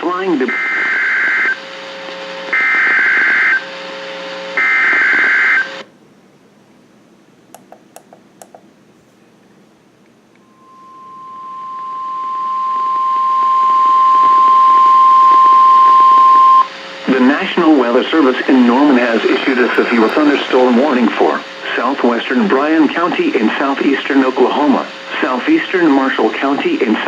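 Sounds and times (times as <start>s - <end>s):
buzzy digital data tones: 10.4s - 20.8s.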